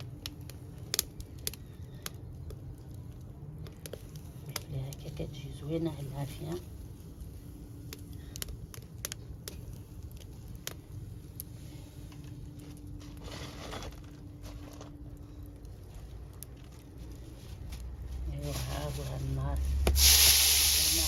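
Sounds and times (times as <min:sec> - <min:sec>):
sharp pops and clicks: 0:00.0 - 0:05.0, 0:07.6 - 0:11.5
faint steady hum: 0:00.0 - 0:20.0
wood fire crackling: 0:00.0 - 0:21.0.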